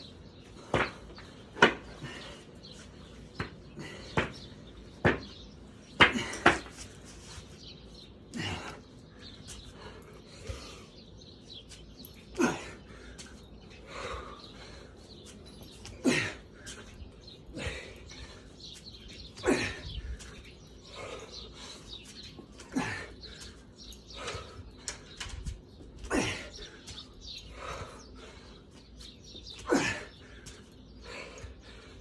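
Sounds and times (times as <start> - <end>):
person breathing hard: 8.4 - 11.1, 12.4 - 15.3, 15.9 - 25.2, 26.1 - 28.8, 29.6 - 32.0.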